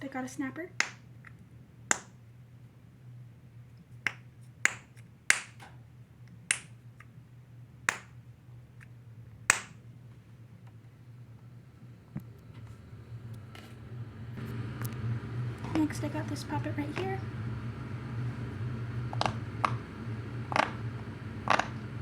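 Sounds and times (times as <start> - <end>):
fidget toy snapping: 1.9 - 2.2, 4.1 - 5.7, 6.5 - 7.1, 7.9 - 8.2, 9.5 - 9.8.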